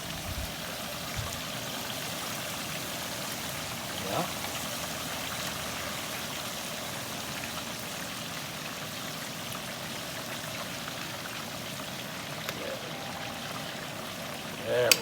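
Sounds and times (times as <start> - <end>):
oil bubbling and crackling: 0.0 - 15.0.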